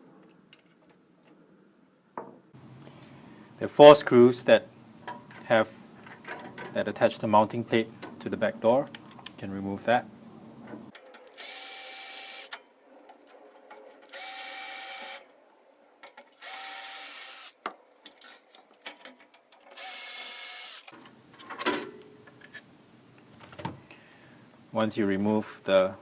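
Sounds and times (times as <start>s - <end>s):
power screwdriver running: 11.4s - 12.5s, 14.1s - 15.3s, 16.4s - 17.6s, 19.7s - 20.9s.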